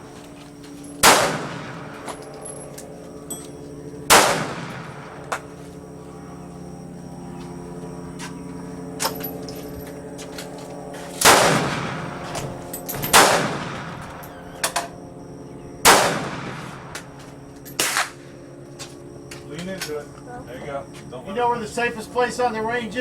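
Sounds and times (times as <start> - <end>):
steady hum: 0.0 - 23.0
rifle shots: 1.0 - 2.2, 4.1 - 5.4, 11.2 - 14.2, 15.8 - 17.1.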